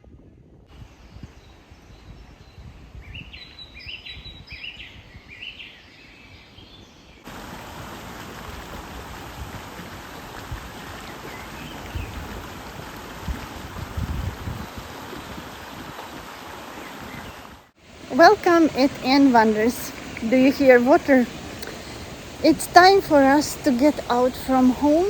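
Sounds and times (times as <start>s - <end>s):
bird singing: 1.1s - 7.2s
flowing water rushing: 7.2s - 25.0s.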